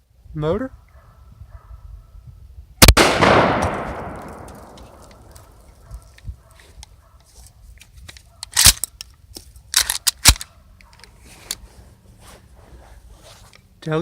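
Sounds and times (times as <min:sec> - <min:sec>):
shotgun shots: 0:02.8 - 0:05.6.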